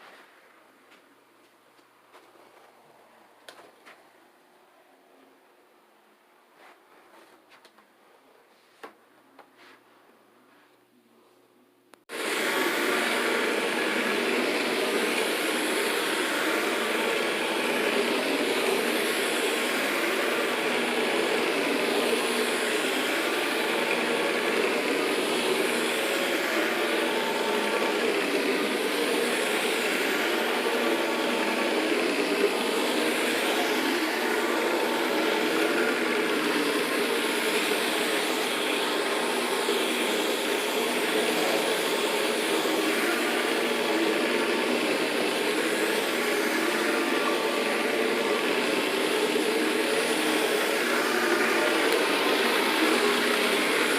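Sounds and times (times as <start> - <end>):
carpet cleaning machine running: 12.1 - 53.9.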